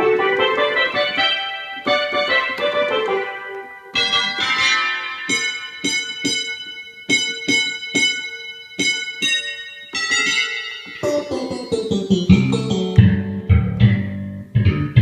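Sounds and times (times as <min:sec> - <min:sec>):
electric piano notes and chords: 0:00.0 - 0:05.0, 0:10.8 - 0:15.0.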